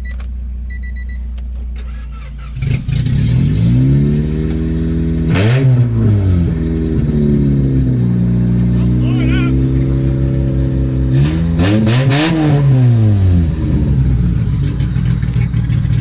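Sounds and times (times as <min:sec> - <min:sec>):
short electronic beeping: 0:00.0 - 0:01.3
car engine starting and revving: 0:01.2 - 0:16.0.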